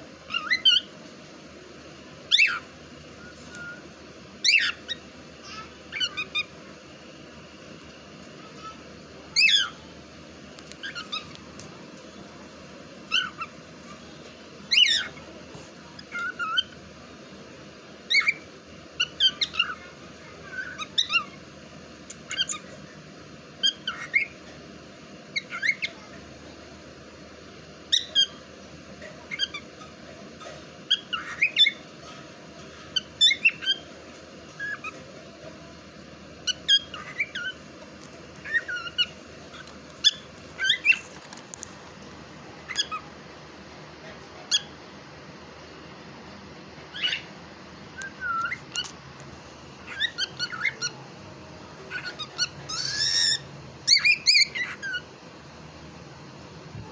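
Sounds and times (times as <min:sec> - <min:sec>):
low background hum: 0:00.0 - 0:56.9
cockatiel chirps and whistles: 0:00.3 - 0:00.9, 0:02.3 - 0:02.6, 0:03.2 - 0:03.8, 0:04.4 - 0:05.0, 0:10.8 - 0:11.3, 0:13.1 - 0:13.5, 0:18.1 - 0:18.4, 0:20.5 - 0:21.4, 0:23.6 - 0:24.4, 0:25.3 - 0:26.0, 0:30.9 - 0:31.8, 0:33.0 - 0:33.9, 0:36.4 - 0:37.6, 0:38.4 - 0:41.1, 0:46.9 - 0:47.2, 0:48.0 - 0:48.9, 0:49.9 - 0:50.9, 0:51.9 - 0:55.0.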